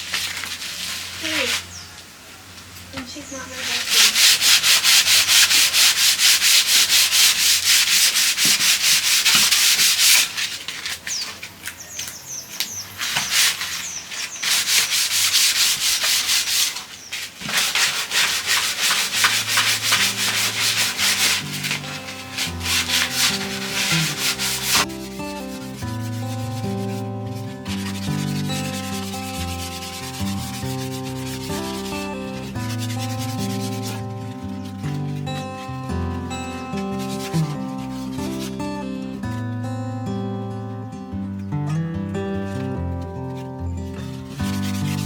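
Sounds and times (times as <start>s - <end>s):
sandpaper rubbing on wood: 0.0s - 1.8s, 3.5s - 38.8s, 44.2s - 45.0s
background music: 19.0s - 45.0s.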